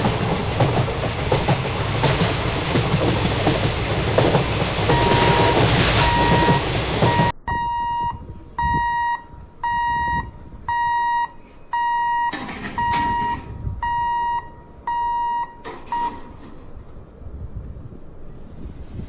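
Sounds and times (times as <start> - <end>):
electronic warning beeps: 4.9 - 16.2.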